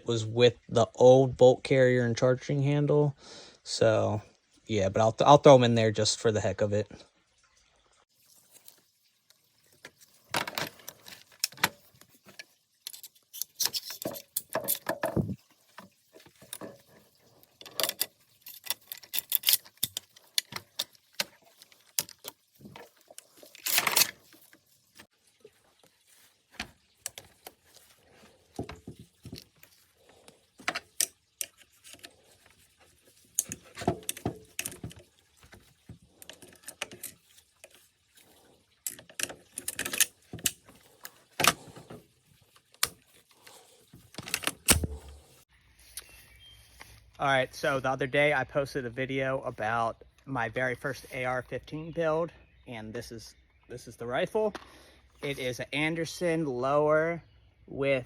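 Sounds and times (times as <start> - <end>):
rifle parts clicking and rattling: 9.8 - 24.7, 26.6 - 45.4.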